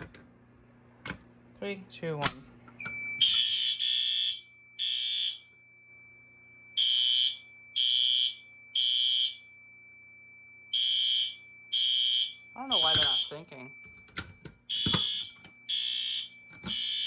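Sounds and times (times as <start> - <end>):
fire alarm horn blasts: 2.8 - 17.0
steady high-pitched tone: 12.6 - 13.8.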